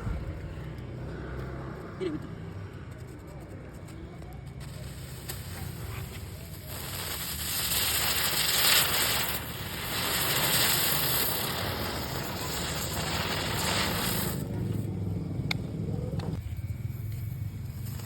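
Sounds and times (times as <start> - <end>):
firework spraying sparks hiss: 4.6 - 14.9, 17.1 - 18.0.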